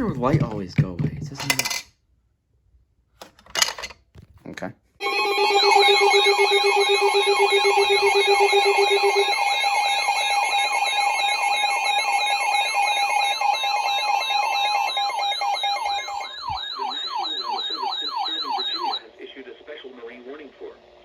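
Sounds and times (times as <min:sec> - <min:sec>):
alarm beep tones: 0:05.0 - 0:19.0
siren-like sweeping tone: 0:05.0 - 0:19.0.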